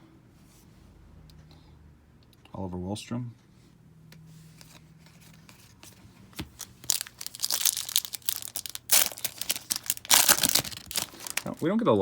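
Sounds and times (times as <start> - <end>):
plastic wrapper tearing and crinkling: 6.5 - 11.7.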